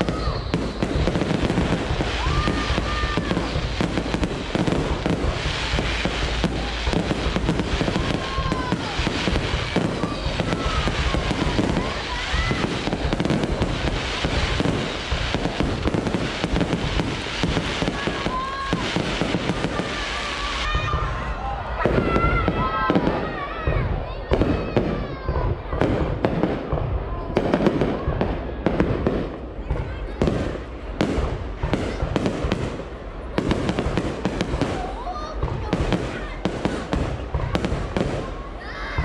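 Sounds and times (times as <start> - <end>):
firework whistles: 0.0 - 23.3
fireworks bangs and crackling: 0.0 - 39.0.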